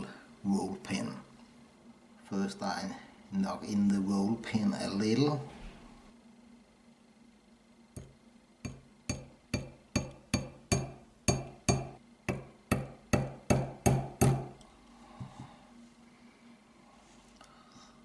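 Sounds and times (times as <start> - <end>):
small hammer tapping metal pin: 8.0 - 14.6.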